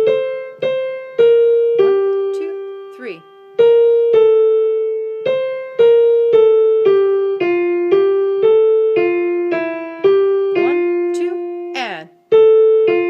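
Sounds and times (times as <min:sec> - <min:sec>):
piano melody: 0:00.0 - 0:13.0.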